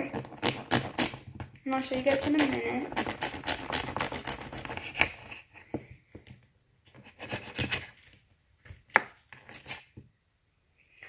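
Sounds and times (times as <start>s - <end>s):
knife scraping butter: 0.0s - 5.8s, 6.9s - 8.2s, 9.0s - 10.0s.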